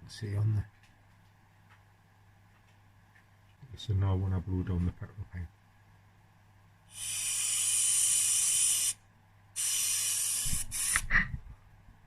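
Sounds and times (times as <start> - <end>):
air hissing through carburettor: 6.9 - 9.0, 9.6 - 11.2.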